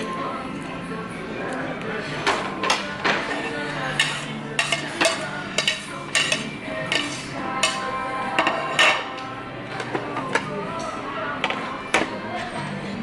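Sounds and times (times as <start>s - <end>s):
music playing: 0.0s - 13.0s
cutlery clinking on plates: 2.2s - 12.1s.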